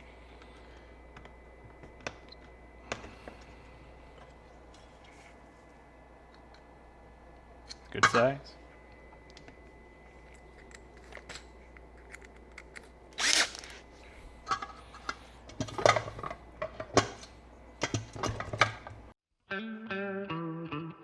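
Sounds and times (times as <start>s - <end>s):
power drill boring: 13.2s - 13.7s.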